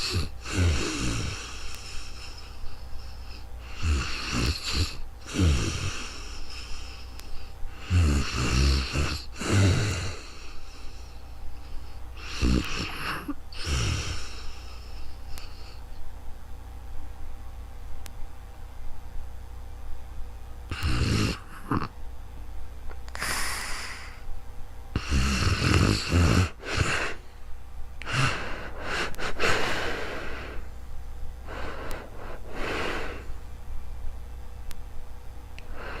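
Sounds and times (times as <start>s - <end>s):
rattly snoring: 0.0s - 7.1s, 7.7s - 15.8s, 20.7s - 21.9s, 25.0s - 27.2s, 28.0s - 30.6s.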